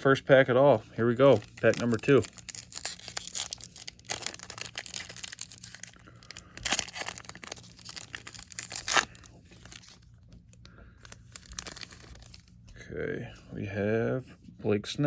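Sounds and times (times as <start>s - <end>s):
wrapper crinkling: 1.0s - 10.1s, 11.0s - 12.5s
card pack wrapper tearing: 1.2s - 10.0s, 11.0s - 12.4s.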